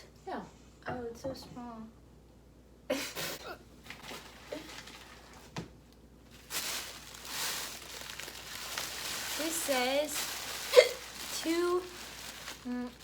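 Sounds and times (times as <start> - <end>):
girl hiccuping: 10.7 - 11.1.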